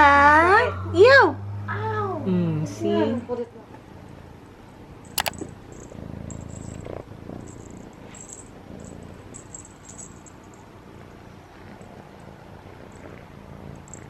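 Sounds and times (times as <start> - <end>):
sharp click: 5.2 - 5.4.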